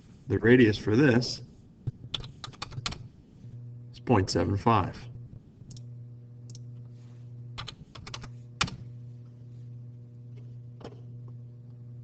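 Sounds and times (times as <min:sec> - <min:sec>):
low electrical hum: 0:00.0 - 0:12.0.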